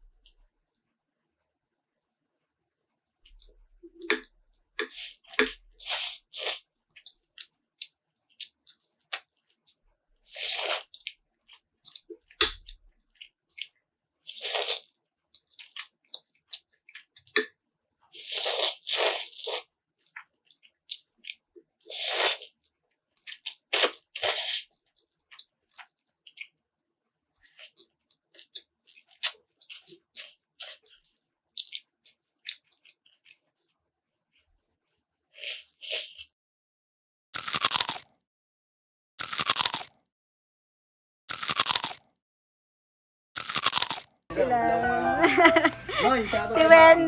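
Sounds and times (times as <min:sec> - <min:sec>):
crunching and chewing crispy food: 0:04.1 - 0:26.7, 0:27.4 - 0:36.3, 0:37.4 - 0:38.3, 0:39.2 - 0:40.1, 0:41.3 - 0:42.2, 0:43.4 - 0:44.2.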